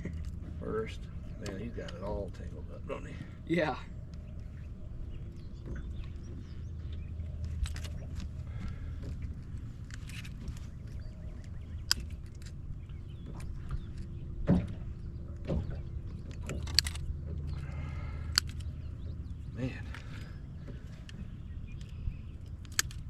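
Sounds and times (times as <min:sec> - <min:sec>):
steady low rumble: 0:00.0 - 0:23.0
sharp handling clicks and knocks: 0:05.3 - 0:23.0.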